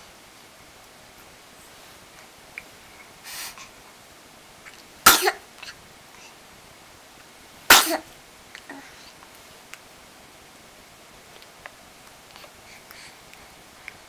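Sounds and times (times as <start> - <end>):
soft breathy sound: 1.4 - 4.8, 5.5 - 6.6, 8.5 - 9.6, 11.6 - 14.0
person sneezing: 7.7 - 8.1.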